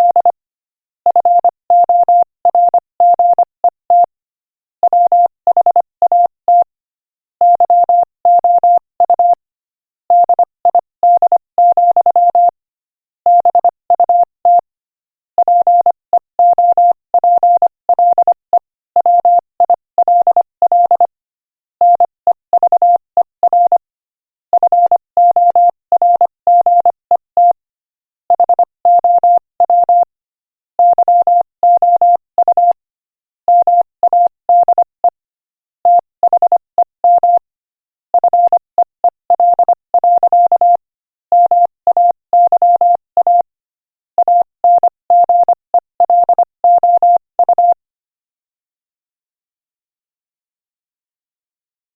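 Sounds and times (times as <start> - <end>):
morse code beeps: 0.0 - 0.4, 1.1 - 4.1, 4.8 - 6.7, 7.4 - 9.4, 10.1 - 12.6, 13.3 - 14.7, 15.4 - 21.2, 21.8 - 23.9, 24.5 - 27.6, 28.3 - 30.1, 30.8 - 32.8, 33.5 - 35.2, 35.8 - 37.5, 38.1 - 43.5, 44.2 - 47.8.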